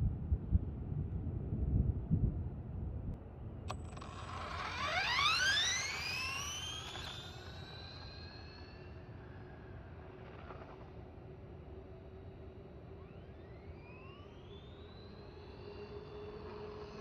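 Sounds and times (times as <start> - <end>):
electric motor whining: 3.7 - 10.7.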